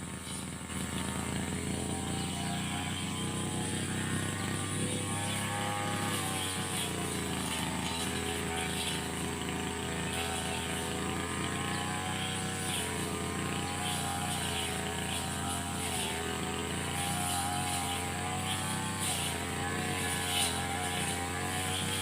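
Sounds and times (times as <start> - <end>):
brush cutter engine running: 0.0 - 22.0.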